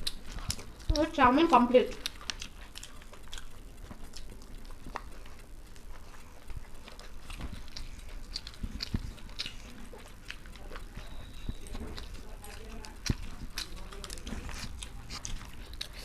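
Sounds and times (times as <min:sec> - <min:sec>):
people chewing and eating: 0:00.0 - 0:16.0.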